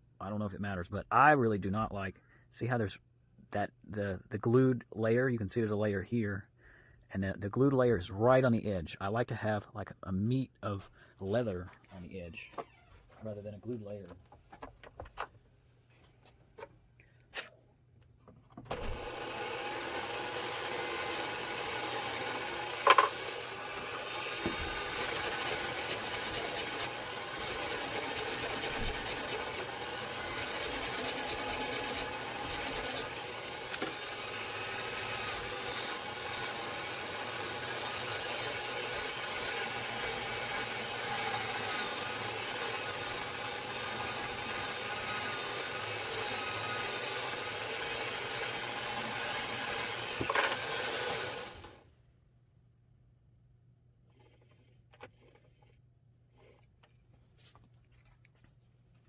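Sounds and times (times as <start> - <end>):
hand tool scraping leather: 24.4 - 33.9.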